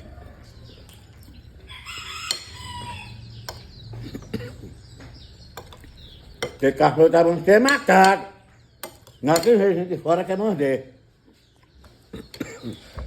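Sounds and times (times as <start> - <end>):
rooster crowing: 1.7 - 3.4.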